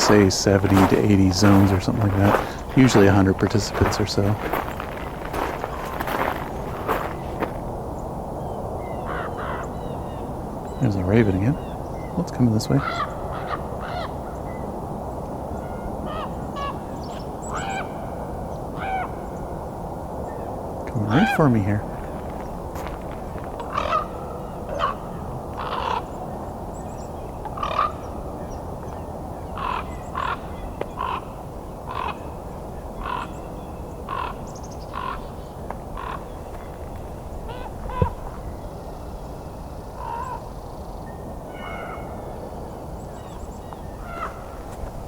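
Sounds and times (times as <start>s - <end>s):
raven croaking: 0.0s - 8.1s, 8.7s - 19.7s, 20.6s - 45.0s.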